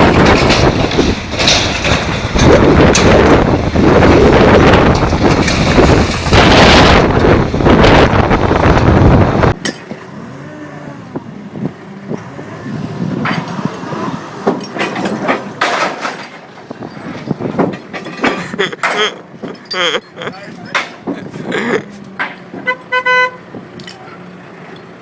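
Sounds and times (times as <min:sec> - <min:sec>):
scattered knocks: 0:00.0 - 0:07.2
loud engine and machinery noise: 0:00.0 - 0:25.0.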